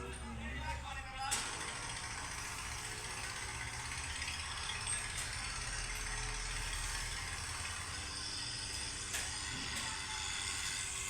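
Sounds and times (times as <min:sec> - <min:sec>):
tractor diesel engine clattering: 0:00.0 - 0:08.1.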